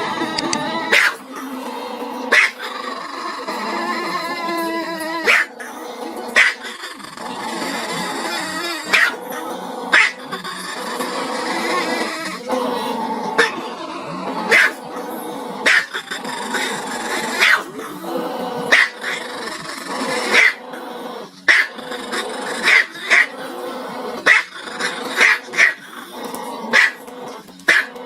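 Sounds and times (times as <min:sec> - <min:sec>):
dog barking: 0:00.9 - 0:01.2, 0:02.3 - 0:02.6, 0:05.2 - 0:05.5, 0:06.4 - 0:06.7, 0:08.8 - 0:09.2, 0:09.9 - 0:10.3, 0:14.5 - 0:14.8, 0:15.6 - 0:16.1, 0:17.3 - 0:17.7, 0:18.7 - 0:19.2, 0:20.2 - 0:20.6, 0:21.4 - 0:21.8, 0:22.6 - 0:23.4, 0:24.2 - 0:24.5, 0:25.1 - 0:25.8, 0:26.7 - 0:27.1, 0:27.7 - 0:28.0.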